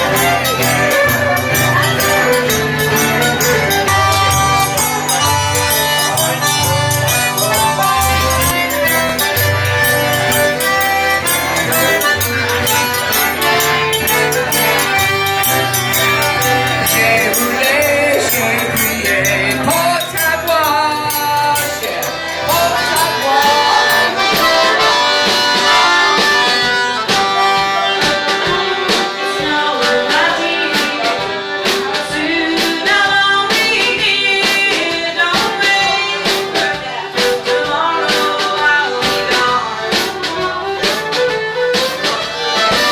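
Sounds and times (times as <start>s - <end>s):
sharp percussion hits: 0.0s - 25.5s
live band playing dance music: 0.0s - 42.9s.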